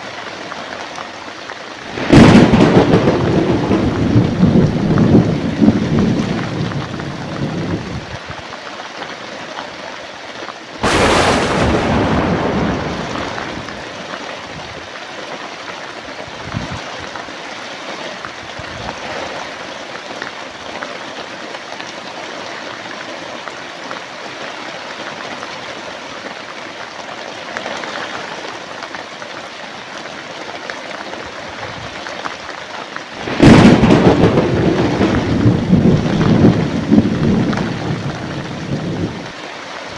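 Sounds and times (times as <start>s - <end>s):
heavy rain: 0.1s - 8.2s, 10.8s - 15.0s, 30.8s - 39.9s
sharp thunderclap: 1.9s - 8.0s, 10.8s - 14.2s, 33.2s - 39.3s
thunder rumbling: 1.9s - 8.2s, 10.8s - 14.6s, 33.2s - 39.3s.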